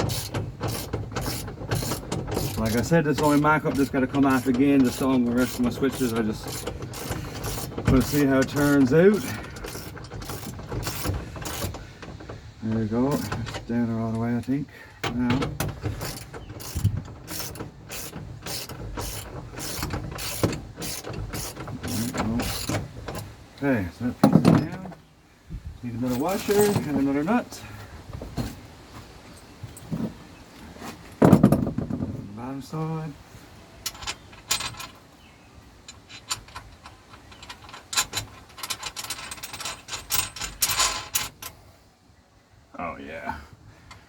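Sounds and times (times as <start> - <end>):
ratchet wrench clicking: 0.0 - 11.8, 16.0 - 22.8
socket ratchet clicking: 16.0 - 22.8.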